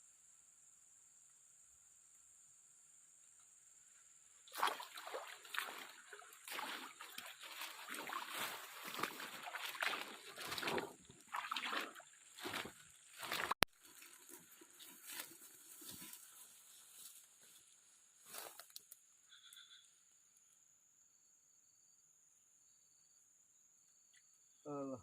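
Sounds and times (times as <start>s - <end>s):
faint high insect drone: 0.0s - 25.0s
water splashing and sloshing: 4.5s - 17.2s.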